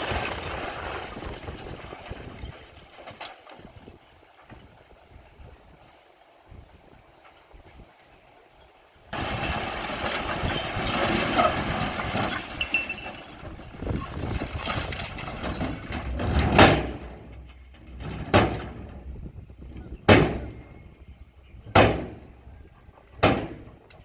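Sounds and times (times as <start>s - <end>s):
bulldozer engine under load: 3.5s - 24.0s
rock grinding and clattering: 9.2s - 19.1s.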